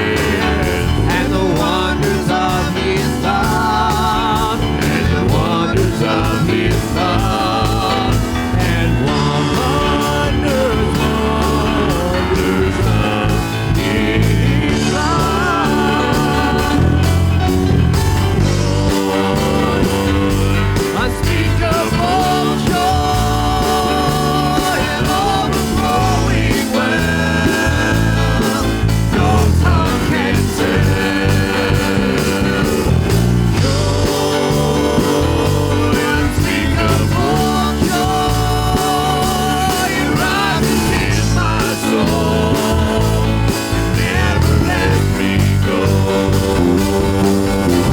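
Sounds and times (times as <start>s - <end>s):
live band playing instrumental: 0.0s - 47.9s.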